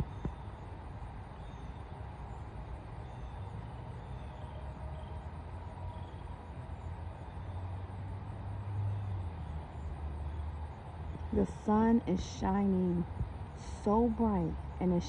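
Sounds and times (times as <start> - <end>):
steady low rumble: 10.6 - 15.0.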